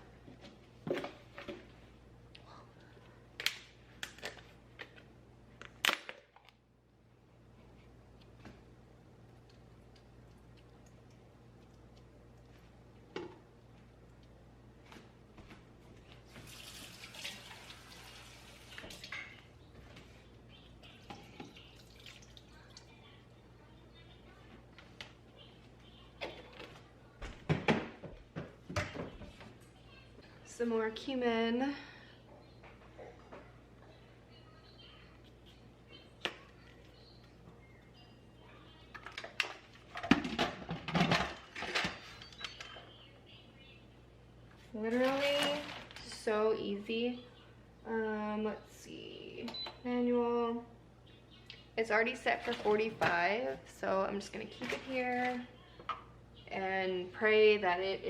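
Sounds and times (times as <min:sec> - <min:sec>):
water running from tap: 0:16.4 - 0:19.2, 0:21.7 - 0:22.4
cookware and utensils clattering: 0:16.4 - 0:19.5, 0:38.9 - 0:42.8, 0:44.8 - 0:46.2, 0:54.5 - 0:56.1.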